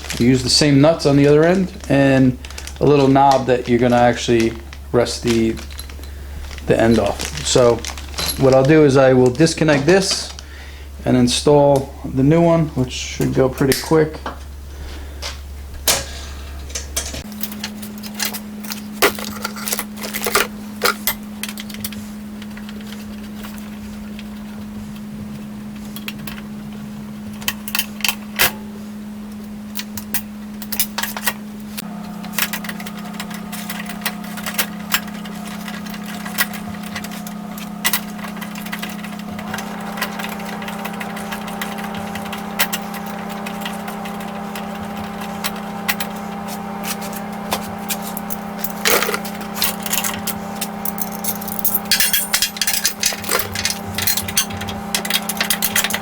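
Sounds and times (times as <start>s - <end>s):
steady electrical hum: 0.0s - 56.0s
higher droning tone: 31.8s - 56.0s.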